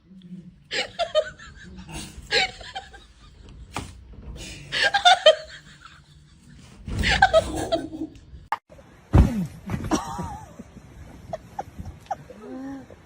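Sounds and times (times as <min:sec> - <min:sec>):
people laughing: 0:00.7 - 0:03.6, 0:04.7 - 0:08.2.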